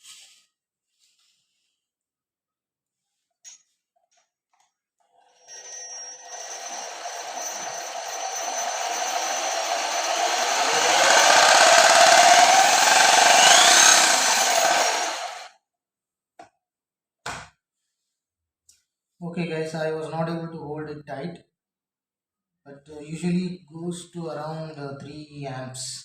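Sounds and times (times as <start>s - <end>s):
power tool spinning: 5.2s - 15.5s.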